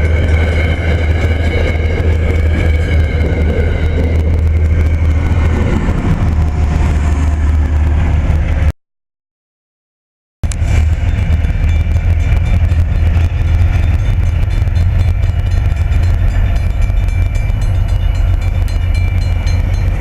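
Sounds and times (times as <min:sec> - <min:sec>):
freight train rumbling past: 0:00.0 - 0:08.7, 0:10.4 - 0:20.0.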